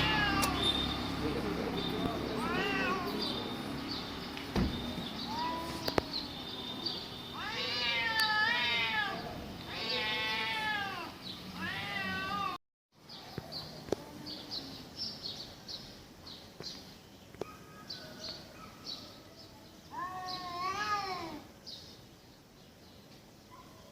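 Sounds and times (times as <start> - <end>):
cats yowling: 0.0 - 0.6, 2.3 - 3.4, 5.2 - 6.2, 7.3 - 12.6, 19.9 - 21.5.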